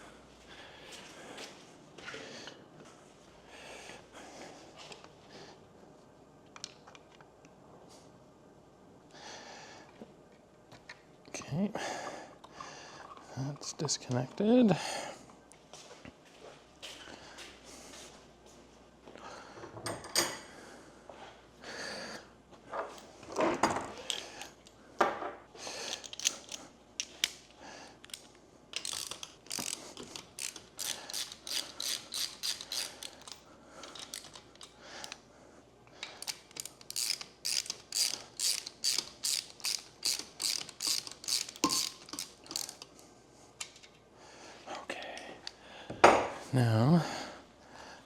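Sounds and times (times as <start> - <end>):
ratchet wrench clicking: 28.0 - 35.2, 36.2 - 42.9.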